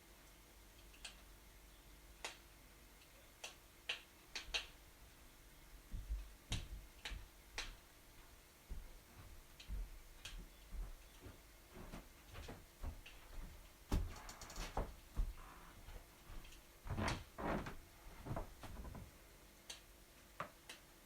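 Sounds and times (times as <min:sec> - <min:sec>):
wood fire crackling and popping: 0:03.4 - 0:04.8.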